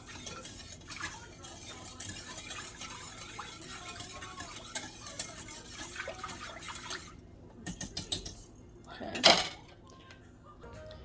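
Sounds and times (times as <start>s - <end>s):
whisk beating in a bowl: 0.0s - 8.6s.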